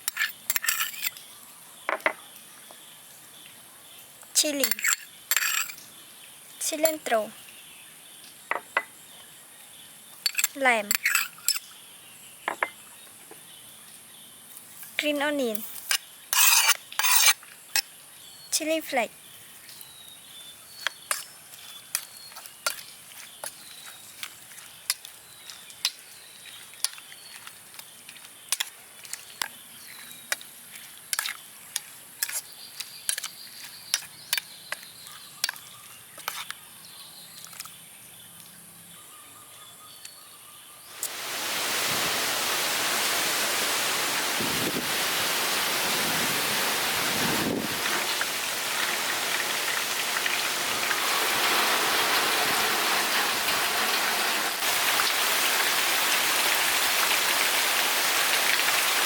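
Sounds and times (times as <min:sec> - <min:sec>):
loud steady hiss: 0:40.9 - 0:59.0.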